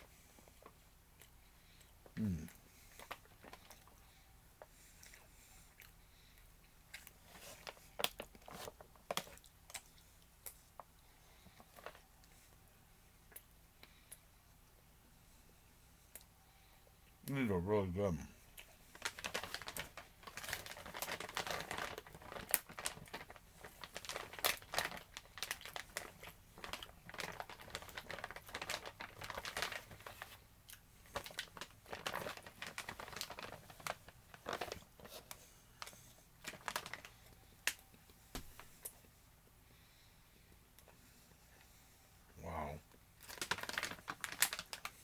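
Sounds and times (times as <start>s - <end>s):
plastic snack bag crinkling: 2.9s - 4.0s, 7.0s - 9.9s, 11.6s - 12.0s, 18.6s - 39.1s, 43.2s - 45.0s.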